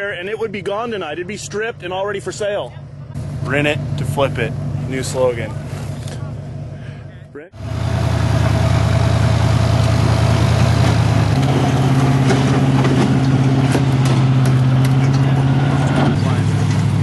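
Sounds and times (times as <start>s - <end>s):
truck engine running: 0.0s - 17.0s.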